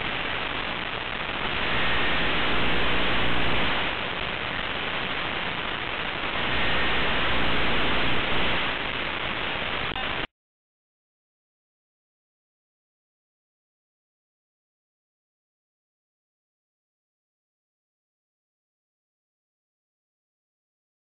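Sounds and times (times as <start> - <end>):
steady static hiss: 0.0 - 10.3.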